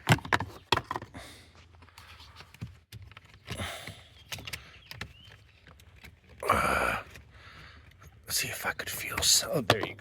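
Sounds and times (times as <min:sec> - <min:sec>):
clicks and rattles of plastic parts: 0:00.0 - 0:10.0.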